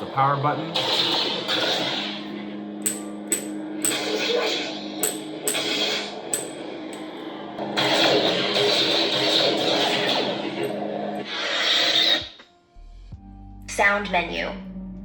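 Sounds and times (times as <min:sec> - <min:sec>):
music-like sound: 0:02.4 - 0:07.6
lightsaber clash strikes: 0:02.8 - 0:04.3, 0:05.0 - 0:07.1.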